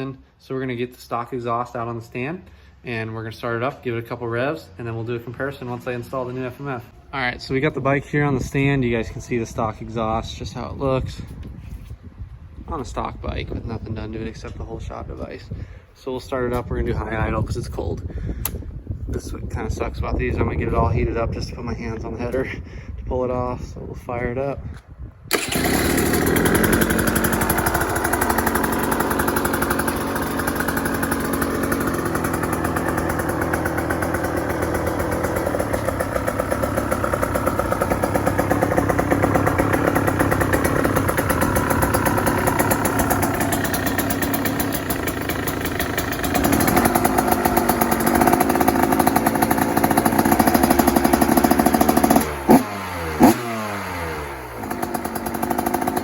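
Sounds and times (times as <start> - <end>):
engine revving: 25.3 - 56.0
two-stroke engine idling: 25.3 - 56.0.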